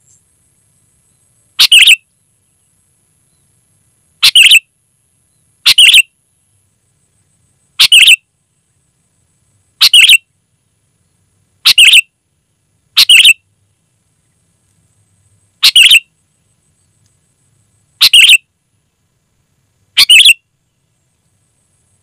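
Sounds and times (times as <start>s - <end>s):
bulbul calling: 1.6s - 2.0s, 4.2s - 4.7s, 5.6s - 6.1s, 7.8s - 8.2s, 9.8s - 10.2s, 11.6s - 12.1s, 13.0s - 13.4s, 15.6s - 16.1s, 18.0s - 18.4s, 20.0s - 20.4s.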